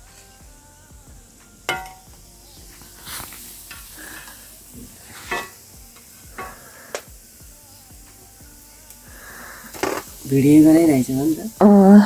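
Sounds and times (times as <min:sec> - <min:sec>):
fritters sizzling in hot oil: 0:00.0 - 0:12.0
metal utensil clinking on pan: 0:01.7 - 0:02.1, 0:05.2 - 0:05.6, 0:06.4 - 0:06.6.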